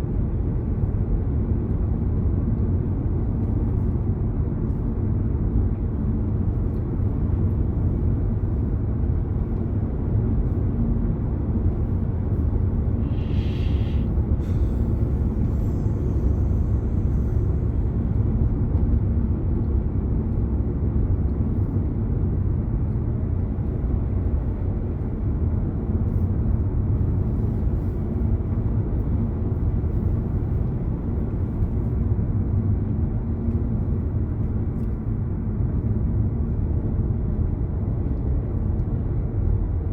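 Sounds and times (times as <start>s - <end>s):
road and engine rumble: 0.0s - 39.9s
brief higher hiss: 13.0s - 14.6s.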